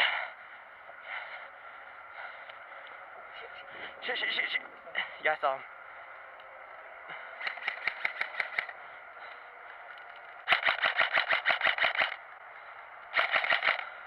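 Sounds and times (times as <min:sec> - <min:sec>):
airsoft gun firing full auto: 0:07.4 - 0:08.7, 0:10.4 - 0:12.2, 0:13.1 - 0:13.9.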